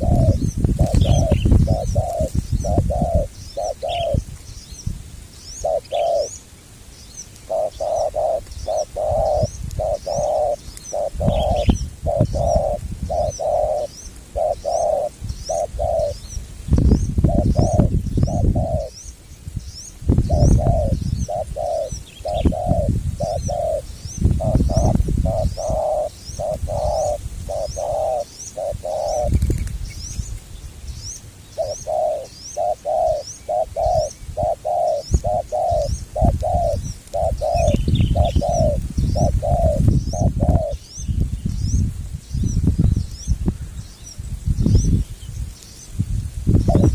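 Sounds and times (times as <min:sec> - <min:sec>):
doves cooing: 0:00.0 - 0:04.3, 0:05.5 - 0:06.5, 0:07.2 - 0:16.5, 0:17.2 - 0:19.1, 0:20.2 - 0:29.7, 0:31.5 - 0:40.9.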